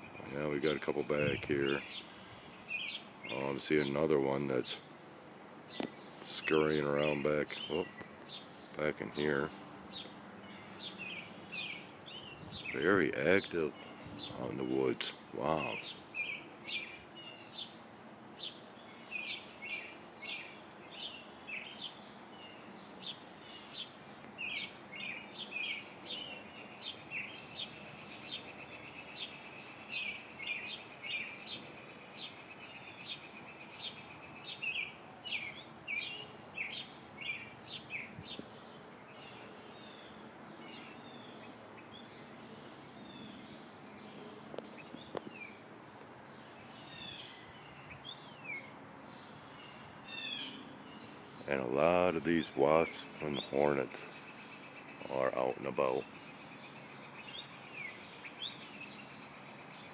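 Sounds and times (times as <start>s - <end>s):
birds chirping: 0.0s - 59.9s
high bird trill: 46.4s - 59.9s.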